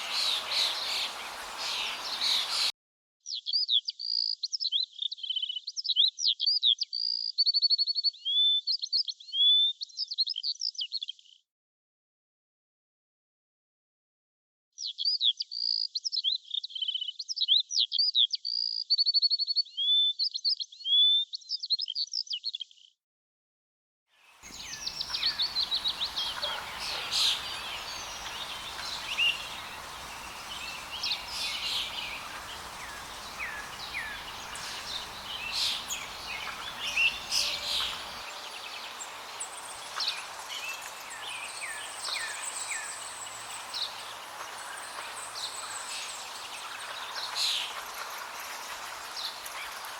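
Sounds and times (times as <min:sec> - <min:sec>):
background hiss: 0:00.0 - 0:02.7, 0:24.4 - 0:49.9
sparrows chirping: 0:00.0 - 0:02.7, 0:24.4 - 0:49.9.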